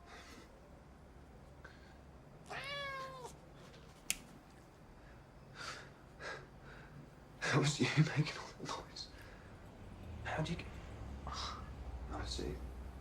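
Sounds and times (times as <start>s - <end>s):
cat meowing: 2.4s - 3.4s.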